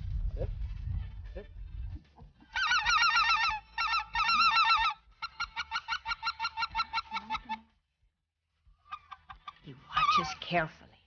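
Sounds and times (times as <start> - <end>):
geese honking: 2.4 - 7.7, 8.8 - 10.7.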